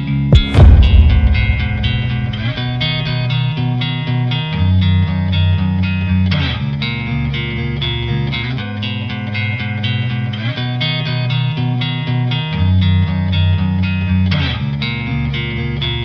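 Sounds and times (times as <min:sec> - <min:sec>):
bass line: 0:00.4 - 0:03.4.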